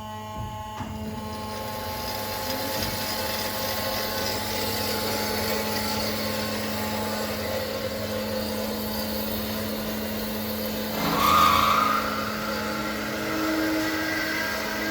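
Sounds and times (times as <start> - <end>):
band saw humming: 0.8 - 14.9
loud bright cutting noise: 4.2 - 14.9.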